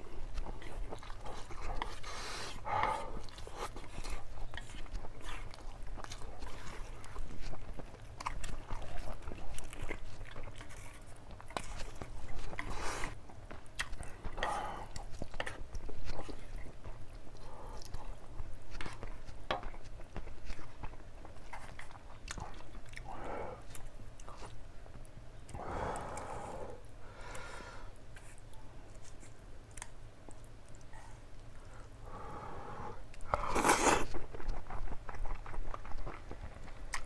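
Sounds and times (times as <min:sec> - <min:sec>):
person chewing and biting: 0:33.1 - 0:37.0.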